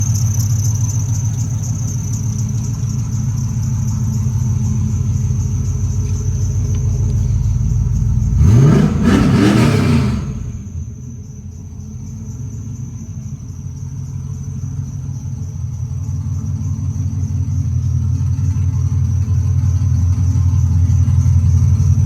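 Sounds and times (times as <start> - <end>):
engine idling and revving: 0.0 - 22.0.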